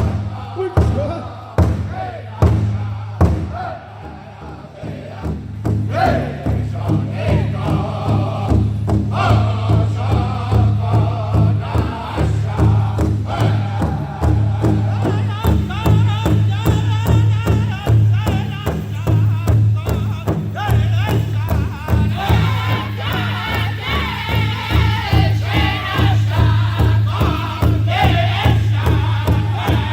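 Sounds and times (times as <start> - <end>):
drum group singing: 0.0 - 29.9
steady drum beat: 0.0 - 29.9.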